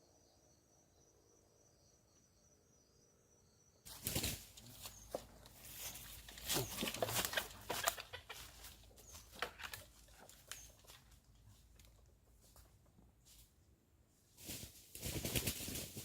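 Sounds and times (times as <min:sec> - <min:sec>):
chickens clucking: 0:06.4 - 0:08.9.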